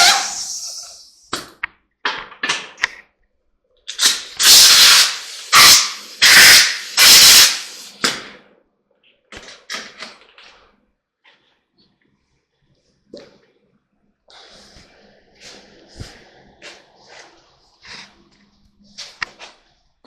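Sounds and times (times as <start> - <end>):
hand tool scraping strokes: 0.0 - 1.0.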